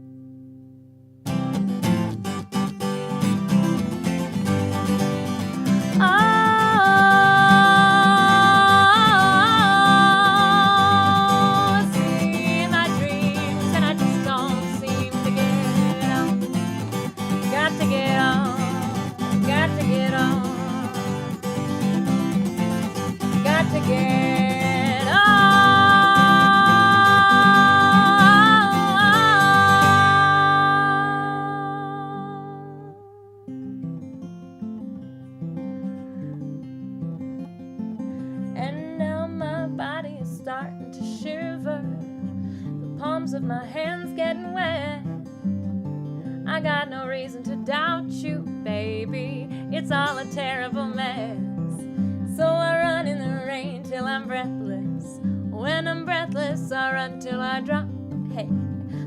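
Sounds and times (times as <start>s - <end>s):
lead guitar melody: 0.0s - 59.0s
strummed acoustic guitar: 0.0s - 59.0s.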